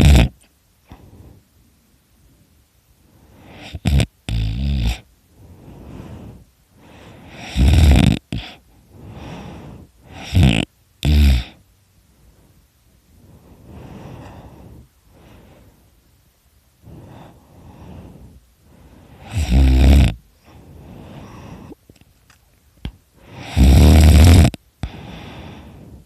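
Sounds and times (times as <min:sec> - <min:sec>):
man snoring loudly: 0:00.0 - 0:00.4, 0:03.5 - 0:05.0, 0:07.3 - 0:08.6, 0:10.1 - 0:11.6, 0:19.2 - 0:20.2, 0:23.3 - 0:24.6
snorts: 0:00.0 - 0:01.1, 0:03.2 - 0:11.6, 0:16.8 - 0:21.8, 0:23.2 - 0:25.8
quiet breaths: 0:00.0 - 0:26.0.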